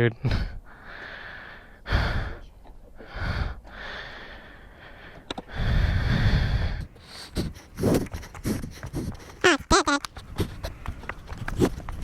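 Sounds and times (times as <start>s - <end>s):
person breathing hard: 0.3s - 9.4s.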